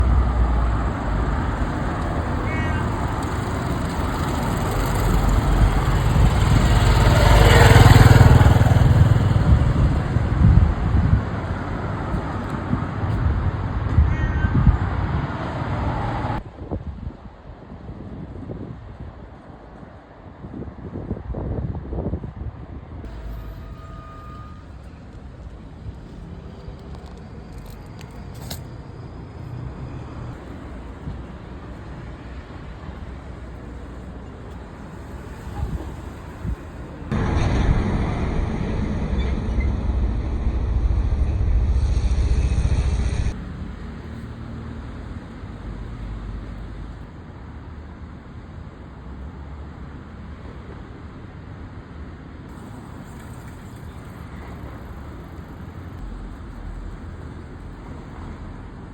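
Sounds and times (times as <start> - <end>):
vehicle engine rumble passing: 0.0 - 14.0, 28.3 - 50.9.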